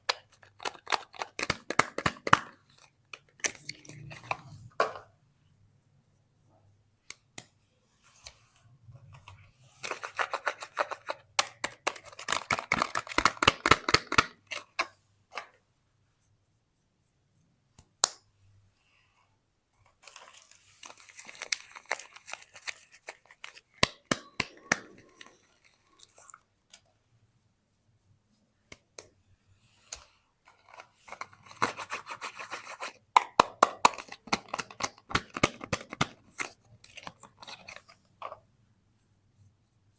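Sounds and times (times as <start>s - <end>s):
paper and plastic crinkling: 19.9s - 26.4s.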